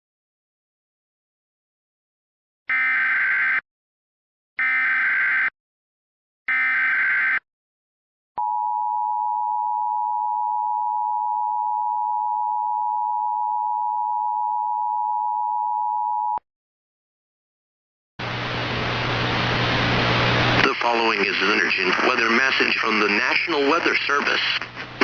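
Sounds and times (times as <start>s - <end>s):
steady hiss with low hum: 18.2s - 25.0s.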